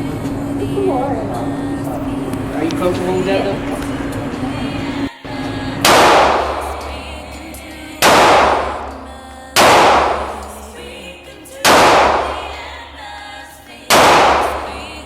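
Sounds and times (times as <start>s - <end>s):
faint song playing: 0.0s - 15.0s
gunshots: 5.8s - 7.1s, 8.0s - 9.0s, 9.6s - 10.6s, 11.6s - 12.7s, 13.9s - 15.0s.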